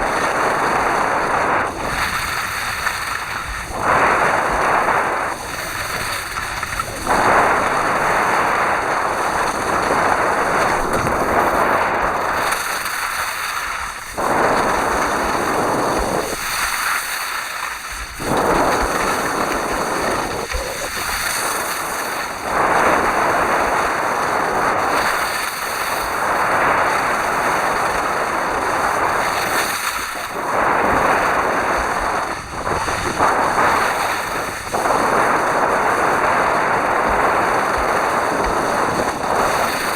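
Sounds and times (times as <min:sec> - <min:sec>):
wind buffeting microphone: 0:00.0 - 0:39.9.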